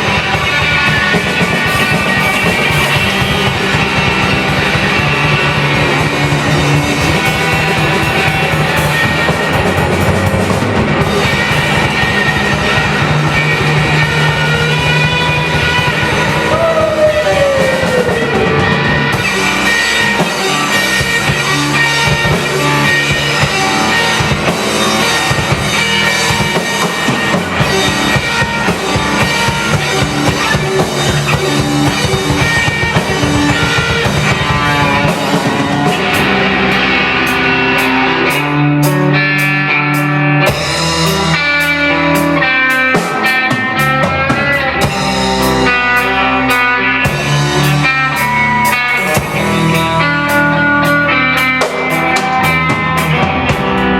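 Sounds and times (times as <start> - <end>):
drum kit: 0.0 - 53.9
electric guitars: 0.0 - 53.9.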